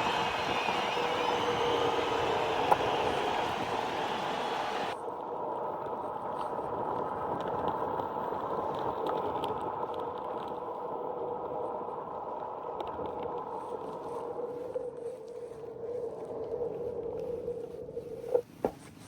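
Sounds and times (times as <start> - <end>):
tyre and motor rushing: 0.0 - 5.0
wind on microphone: 0.0 - 18.6.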